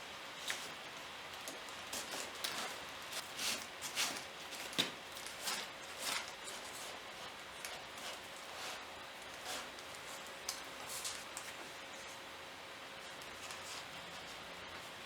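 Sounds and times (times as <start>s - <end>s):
clicks and rustles of leather tools: 1.4s - 11.6s.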